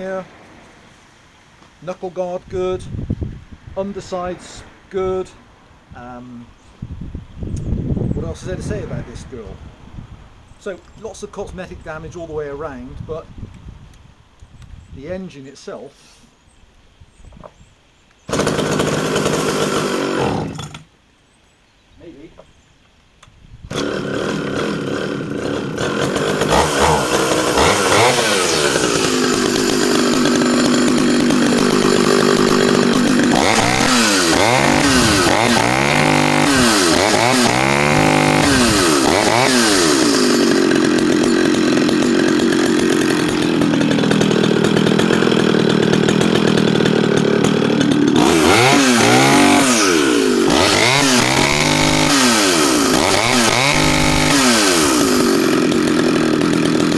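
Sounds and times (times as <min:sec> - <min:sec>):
chainsaw engine revving: 0:18.3 - 0:20.9, 0:23.7 - 0:56.9.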